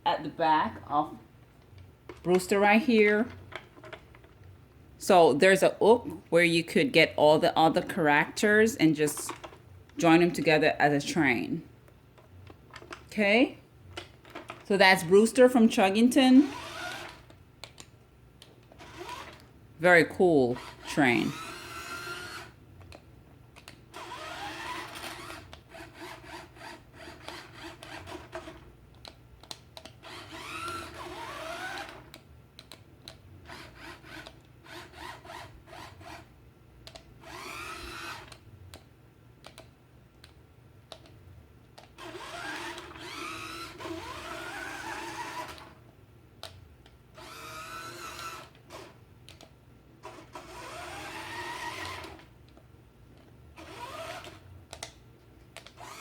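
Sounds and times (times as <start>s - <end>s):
toy train motor whirring: 16.4s - 17.4s, 18.8s - 19.4s, 20.5s - 22.6s, 23.9s - 28.6s, 30.0s - 32.2s, 33.4s - 36.3s, 37.2s - 38.4s, 42.0s - 45.8s, 47.2s - 49.0s, 50.0s - 52.3s, 53.6s - 54.5s, 55.6s - 56.0s.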